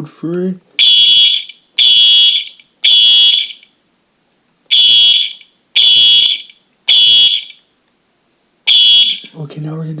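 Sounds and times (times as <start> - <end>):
fire alarm horn blasts: 0.8 - 3.6, 4.7 - 7.6, 8.7 - 9.3.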